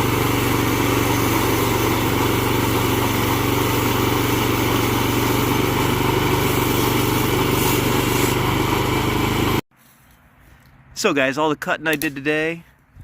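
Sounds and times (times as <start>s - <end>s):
sawmill gasoline engine running: 0.0s - 9.6s.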